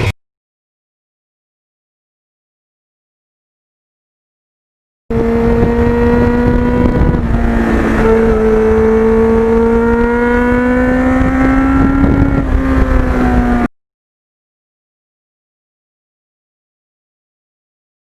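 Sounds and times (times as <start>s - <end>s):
motorcycle engine running under load: 5.1s - 13.7s.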